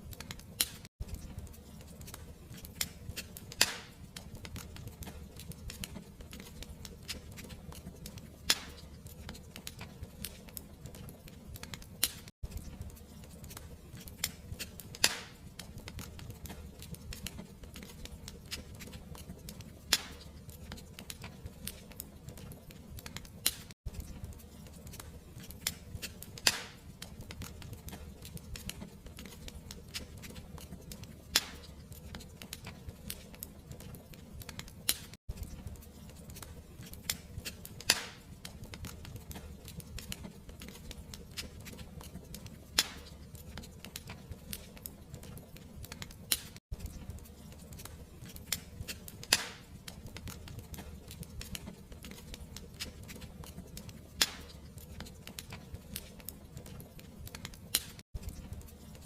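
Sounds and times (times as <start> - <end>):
fire popping: 0.0 - 59.0
wood fire crackling: 0.0 - 59.0.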